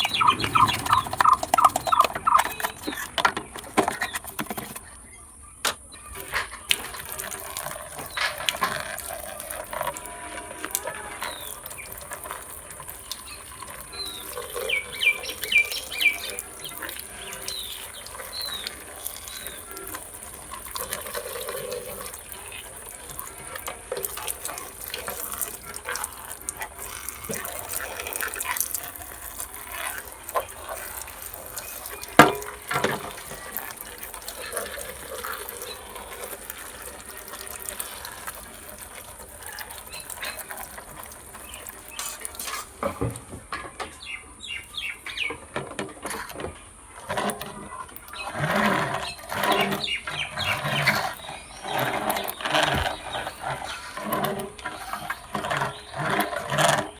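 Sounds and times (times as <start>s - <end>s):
water running and splashing: 0.0s - 4.9s, 5.7s - 43.4s, 44.4s - 56.9s
clicks and knocks of handling: 0.0s - 5.0s.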